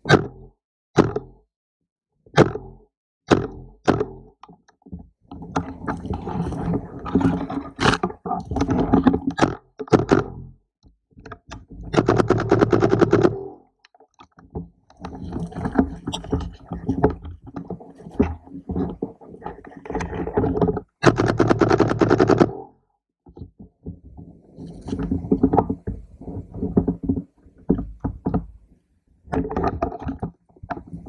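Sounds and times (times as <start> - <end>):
gear knocking and scraping: 11.5 - 13.5.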